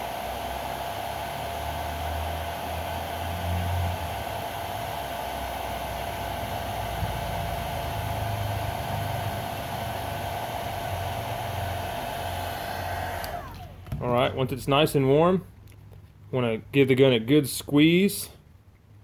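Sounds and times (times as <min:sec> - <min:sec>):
hair dryer blowing: 0:00.0 - 0:14.3.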